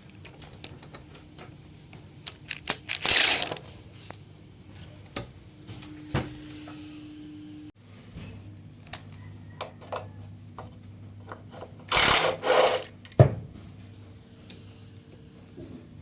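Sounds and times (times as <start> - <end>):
tools clicking and clattering: 0.0 - 4.2
low steady hum: 0.0 - 12.2.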